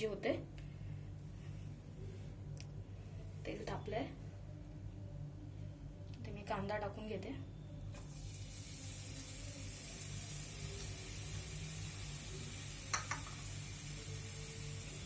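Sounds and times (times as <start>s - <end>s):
onion sizzling in hot oil: 8.0s - 15.0s.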